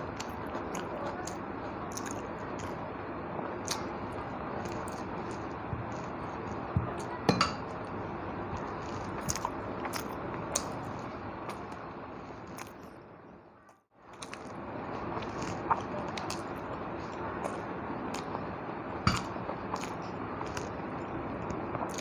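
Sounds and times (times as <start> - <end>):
chewing: 0.0 - 2.8, 3.5 - 13.0, 14.1 - 18.4, 19.1 - 22.0
plate clinking: 7.3 - 7.8.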